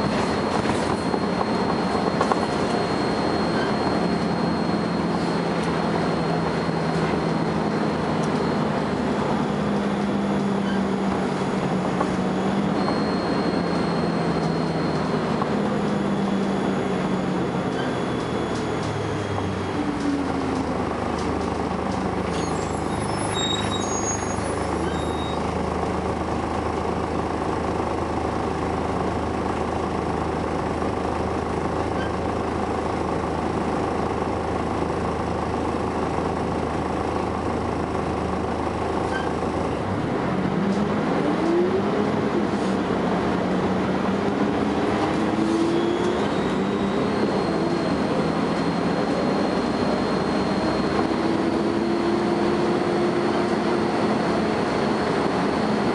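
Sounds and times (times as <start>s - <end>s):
bus diesel engine running: 0.0s - 55.9s.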